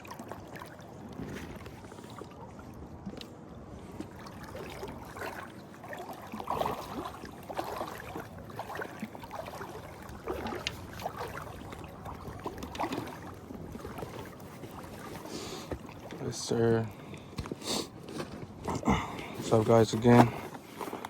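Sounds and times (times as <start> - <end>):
water splashing and lapping: 0.0 - 21.0.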